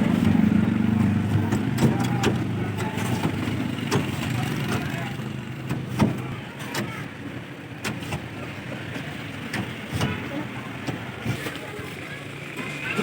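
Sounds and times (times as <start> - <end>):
vehicle engine running: 0.0 - 6.6.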